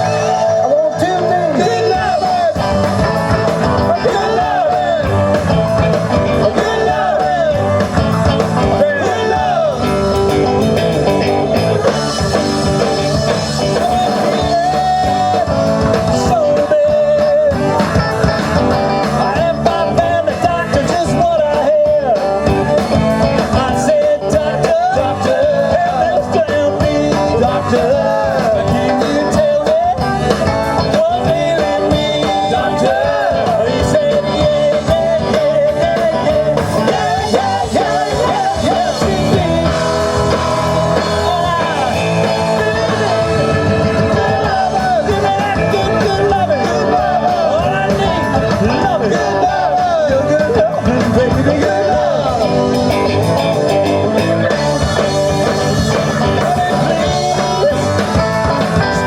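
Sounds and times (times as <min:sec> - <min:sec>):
live rock and roll band: 0:00.0 - 0:59.0.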